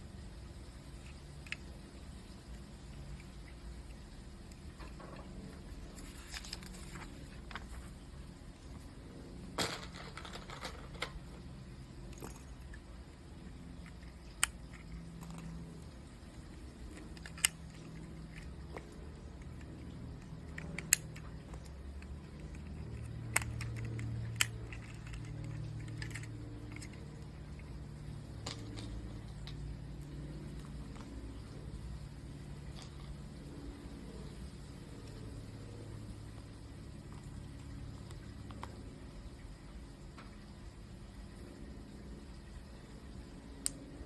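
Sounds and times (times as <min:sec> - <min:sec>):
low steady hum: 0:00.0 - 0:44.0
plastic bricks clicking: 0:09.5 - 0:12.8, 0:13.8 - 0:29.6.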